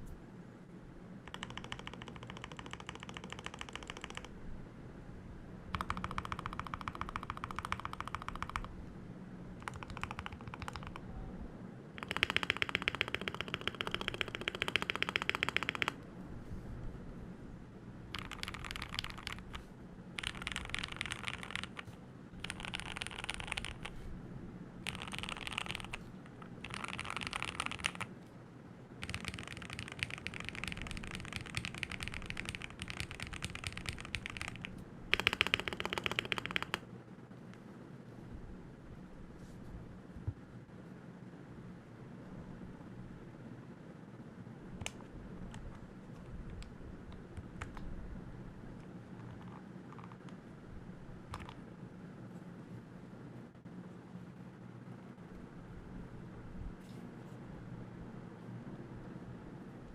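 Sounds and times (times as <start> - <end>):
mechanical keyboard typing: 1.2 - 4.4, 5.7 - 8.7, 9.6 - 11.0, 12.0 - 16.0, 18.1 - 19.6, 20.2 - 24.0, 24.8 - 28.1, 29.0 - 36.8, 47.4 - 47.8, 51.3 - 51.6.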